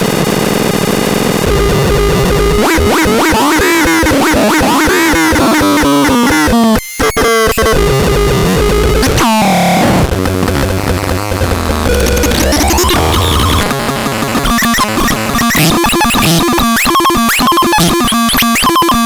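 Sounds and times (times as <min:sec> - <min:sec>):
warbling electronic tones: 0:11.4 - 0:13.7.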